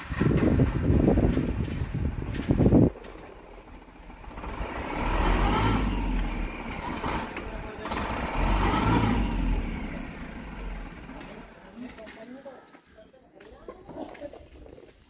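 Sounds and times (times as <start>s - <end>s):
van engine revving: 0.0s - 11.7s.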